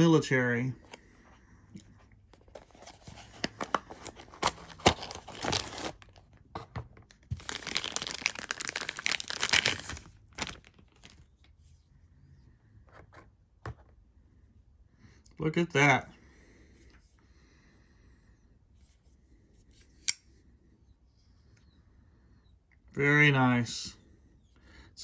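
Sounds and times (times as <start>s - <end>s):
packaging tearing and crinkling: 2.6s - 6.2s, 7.3s - 11.2s.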